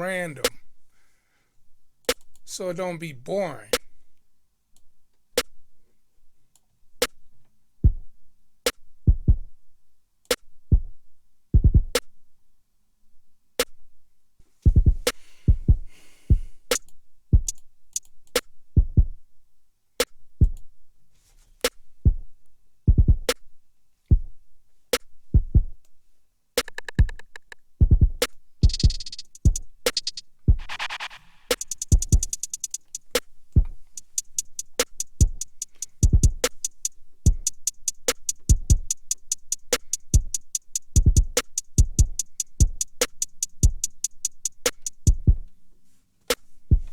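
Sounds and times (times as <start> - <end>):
deep kick drums: 9.1 - 9.5, 11.6 - 11.9, 14.7 - 16.5, 18.8 - 19.2, 22.1 - 22.3, 22.9 - 23.3, 25.4 - 25.8, 27.8 - 29.6, 31.8 - 32.7, 33.6 - 36.7, 37.3 - 38.9, 40.1 - 42.9, 45.0 - 45.5
drum machine hits: 26.6 - 45.4
rapid drum rolls: 28.6 - 45.4.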